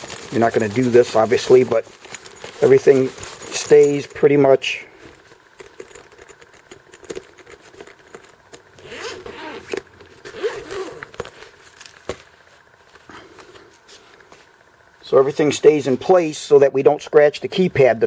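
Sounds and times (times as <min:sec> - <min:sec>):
handling clicks and rustles: 0:00.0 - 0:16.2
zipper being pulled: 0:08.8 - 0:11.2.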